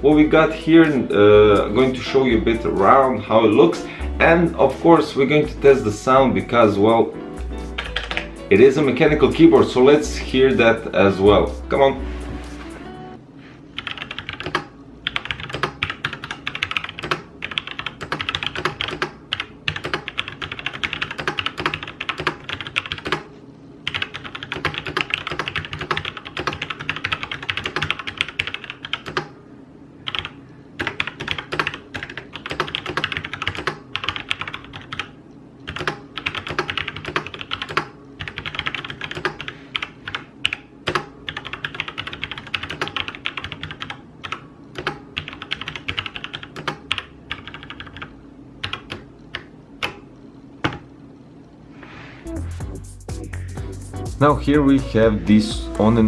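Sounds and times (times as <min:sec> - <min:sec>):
mechanical keyboard typing: 0:07.8 - 0:08.4, 0:13.8 - 0:23.3, 0:23.9 - 0:29.4, 0:30.1 - 0:50.0.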